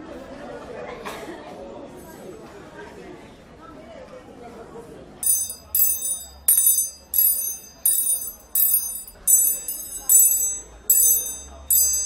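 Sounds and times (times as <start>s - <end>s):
small high-pitched bell ringing: 5.2s - 12.0s.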